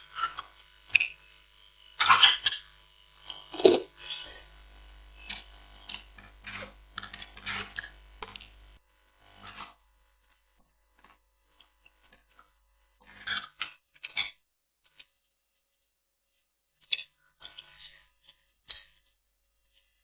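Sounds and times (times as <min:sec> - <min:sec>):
small mouth clicks: 0:03.3 - 0:03.9.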